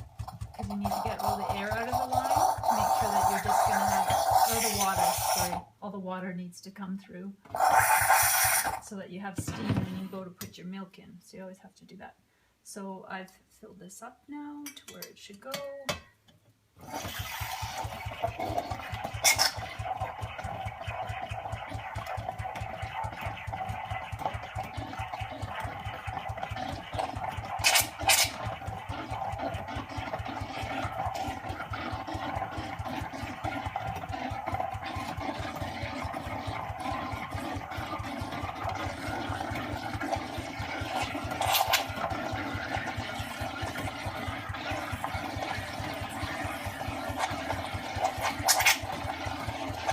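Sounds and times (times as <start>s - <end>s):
pump pulsing rapidly: 0.0s - 5.7s, 7.5s - 10.1s, 16.8s - 49.9s
steam wand hissing: 7.6s - 8.8s.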